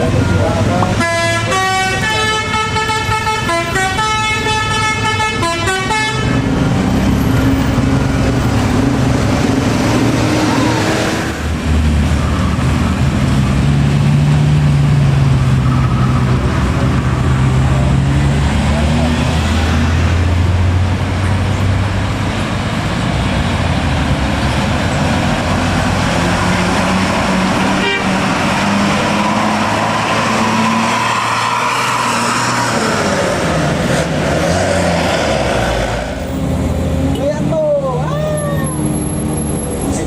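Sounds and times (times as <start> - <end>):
heavy diesel engines running: 0.0 - 40.0
vehicle horn toots: 1.0 - 6.5, 27.8 - 28.2.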